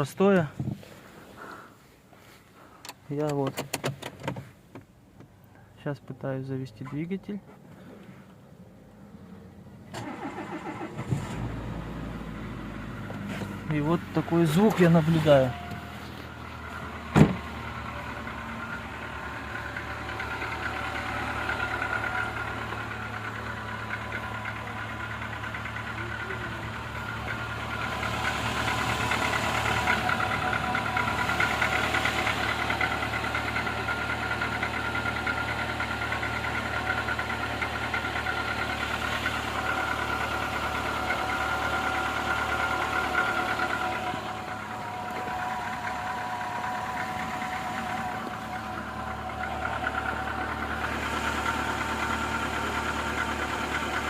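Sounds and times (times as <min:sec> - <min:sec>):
car engine idling with knocking: 0:12.5 - 0:54.0
sharp thump: 0:17.1 - 0:17.5.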